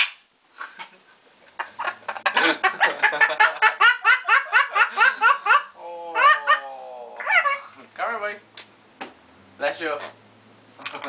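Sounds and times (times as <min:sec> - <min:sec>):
rapid laughter: 0:00.6 - 0:06.6.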